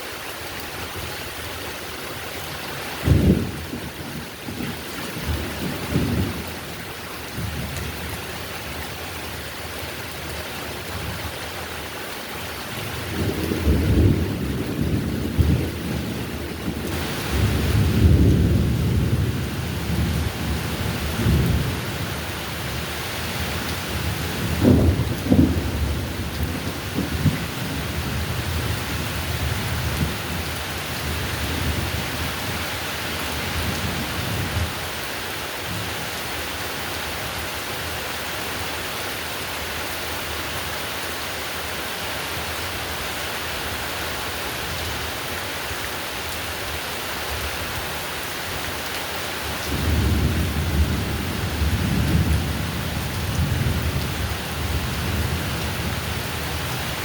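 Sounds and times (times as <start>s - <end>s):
heavy rain: 0.0s - 57.0s
thunder rumbling: 3.0s - 6.6s, 12.9s - 32.6s, 49.7s - 57.0s.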